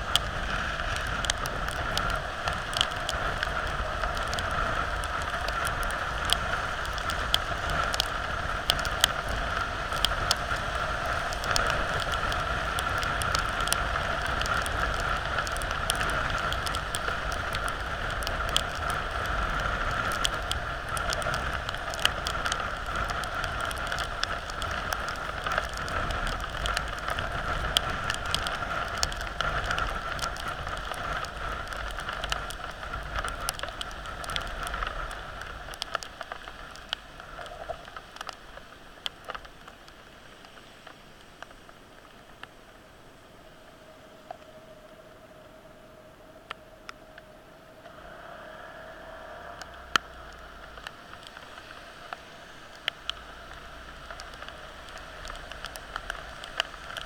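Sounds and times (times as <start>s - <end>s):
heavy rain: 0.0s - 57.0s
raindrops ticking on a surface: 0.0s - 57.0s
low rumble: 43.4s - 57.0s.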